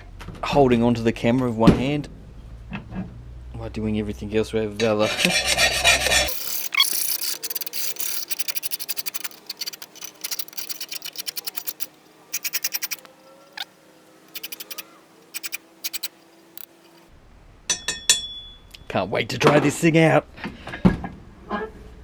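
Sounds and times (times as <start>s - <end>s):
hand file scraping metal: 5.0s - 13.7s, 14.3s - 17.1s.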